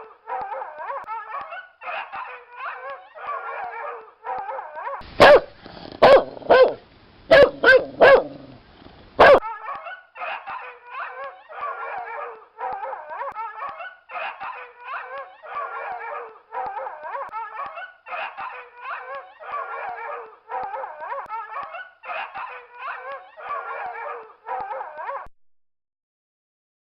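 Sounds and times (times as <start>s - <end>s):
dog yelping: 0.0s - 8.6s, 9.2s - 10.5s
dog barking sharply: 5.2s - 8.4s, 9.2s - 9.4s.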